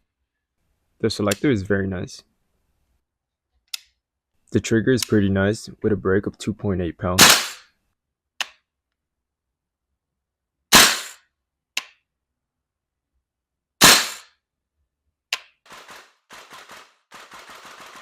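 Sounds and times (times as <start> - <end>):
airsoft rifle shots: 7.2 - 7.7, 10.7 - 11.2, 13.8 - 14.3, 15.7 - 18.0.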